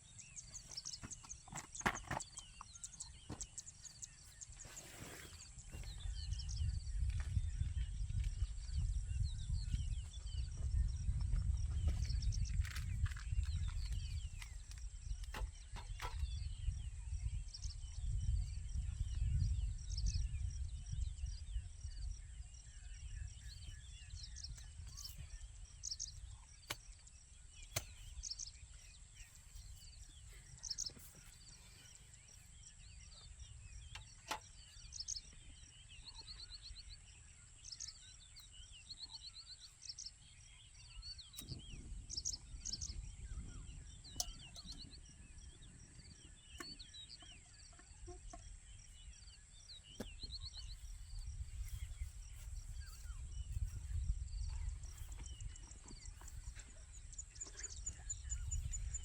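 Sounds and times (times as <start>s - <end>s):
small birds chirping: 0.0s - 59.0s
bird trills: 22.9s - 59.0s.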